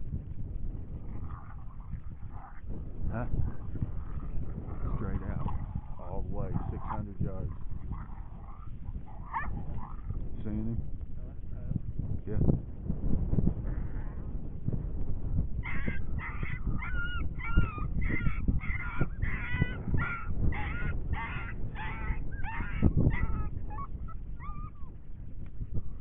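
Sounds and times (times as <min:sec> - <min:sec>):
low wind rumble: 0:00.0 - 0:26.0
coyote yips and barks: 0:04.0 - 0:10.2, 0:15.6 - 0:25.0.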